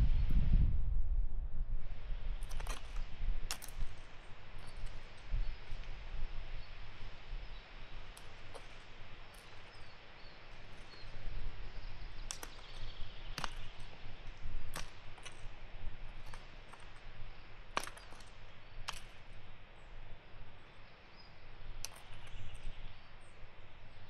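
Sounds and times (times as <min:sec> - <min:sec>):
outdoor background: 0:00.0 - 0:24.0.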